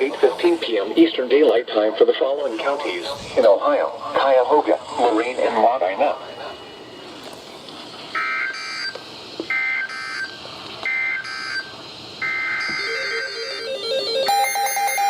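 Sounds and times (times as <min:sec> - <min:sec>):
two-tone digital data screeches: 0:08.2 - 0:15.0.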